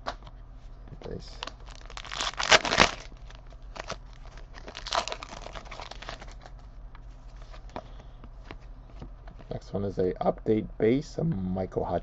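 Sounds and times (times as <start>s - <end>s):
foil wrapper crinkling: 1.3s - 6.6s.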